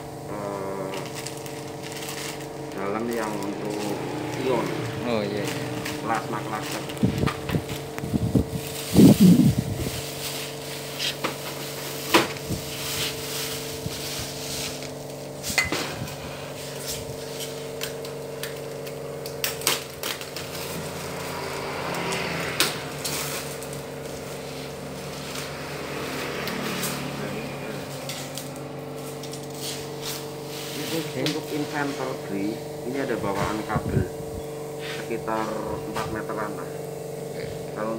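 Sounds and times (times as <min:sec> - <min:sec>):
steady background hum: 0:00.0 - 0:37.9
parts and packaging clicking: 0:16.8 - 0:21.2.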